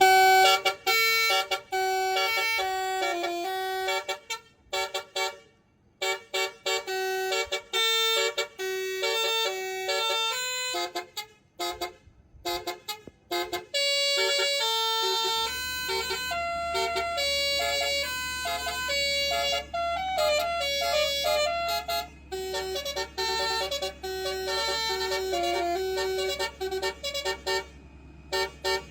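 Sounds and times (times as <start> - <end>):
low engine rumble: 0.0 - 28.9
musical truck horn playing a tune: 0.0 - 28.9.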